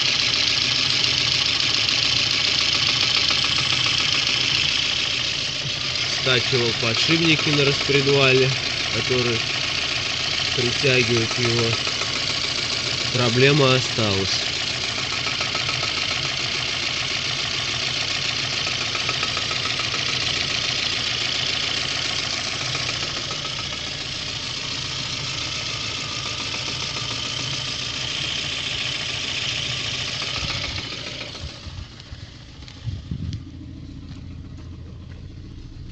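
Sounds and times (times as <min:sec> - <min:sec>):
car engine idling: 0:00.0 - 0:35.9
engine knock: 0:00.0 - 0:35.9.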